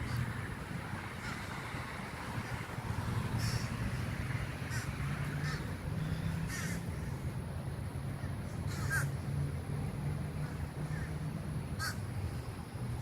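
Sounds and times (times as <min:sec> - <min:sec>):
wild birds calling: 0:03.4 - 0:03.8, 0:04.6 - 0:07.3, 0:08.6 - 0:09.2, 0:10.4 - 0:11.2, 0:11.8 - 0:12.1.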